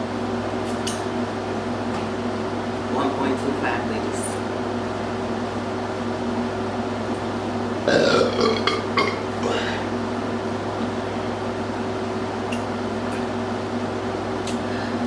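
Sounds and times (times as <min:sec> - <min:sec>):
steady low hum: 0:00.0 - 0:15.0
person burping loudly: 0:07.8 - 0:09.8.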